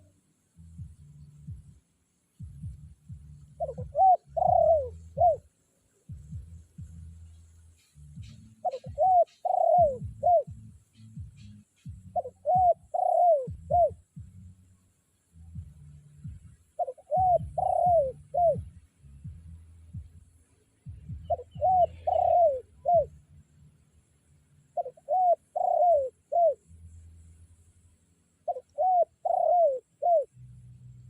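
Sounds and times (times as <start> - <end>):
low rumble: 0.6 - 4.0, 6.1 - 8.7, 9.8 - 12.3, 13.5 - 22.0
dove cooing: 2.4 - 5.5, 7.8 - 14.2, 16.2 - 19.4, 21.0 - 23.2, 24.8 - 26.6, 28.4 - 30.3.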